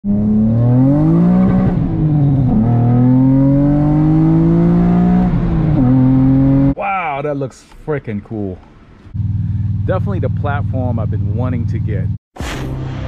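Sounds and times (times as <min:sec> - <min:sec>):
car engine accelerating hard: 0:00.1 - 0:06.8.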